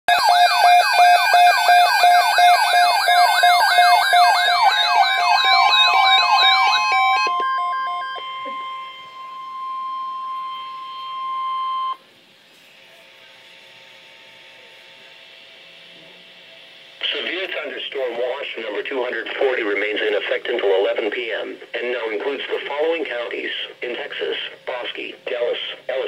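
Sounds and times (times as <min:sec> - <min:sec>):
electronic alarm tones: 0:00.1 - 0:12.0
steady alert tone: 0:00.1 - 0:12.0
sweeping siren tone: 0:00.1 - 0:12.0.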